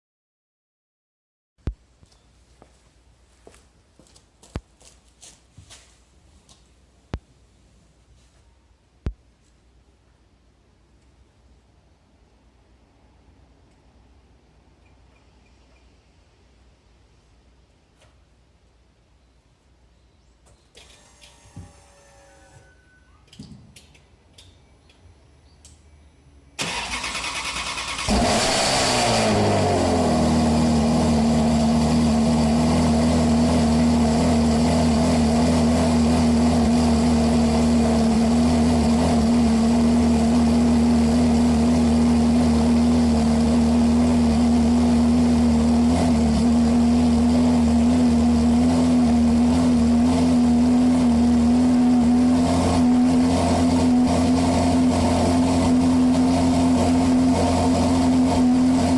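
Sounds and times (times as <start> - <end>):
car engine revving and idling: 27.8 - 58.9.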